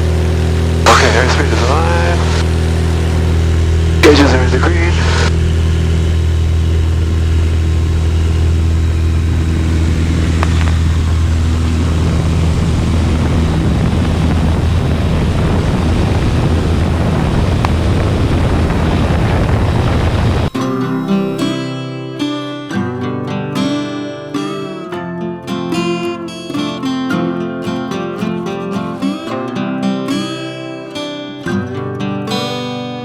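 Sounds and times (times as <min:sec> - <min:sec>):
airplane engine and propeller drone: 0:00.0 - 0:22.8.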